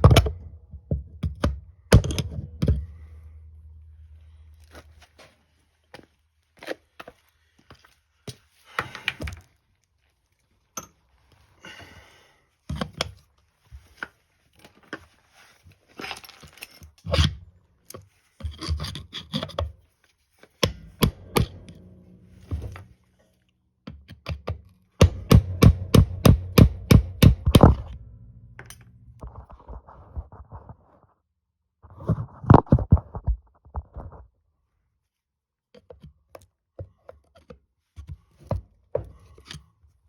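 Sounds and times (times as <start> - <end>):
hammer knocking on metal: 20.6 - 22.9, 25.0 - 28.9
metal scraping: 20.6 - 23.5, 25.0 - 30.2.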